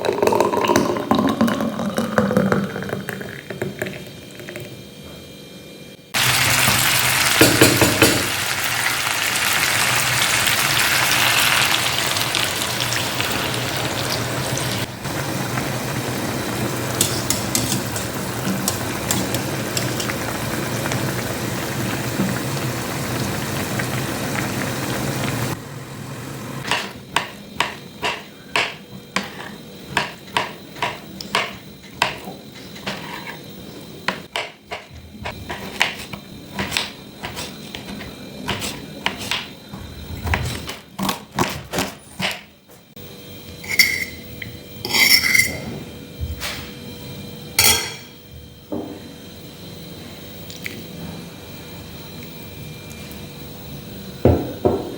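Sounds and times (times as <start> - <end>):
food sizzling in a pan: 6.2 - 28.3
utensils knocking on pots and dishes: 7.4 - 8.4, 16.9 - 20.2, 26.6 - 33.2, 34.1 - 37.8, 43.6 - 45.7, 47.6 - 48.2.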